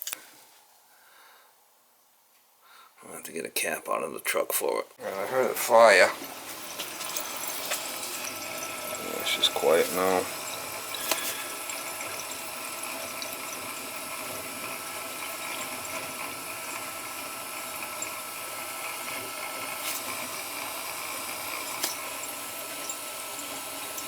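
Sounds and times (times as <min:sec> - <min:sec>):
gas boiler hissing: 0:05.0 - 0:24.0
water moving through pipes: 0:05.0 - 0:24.0.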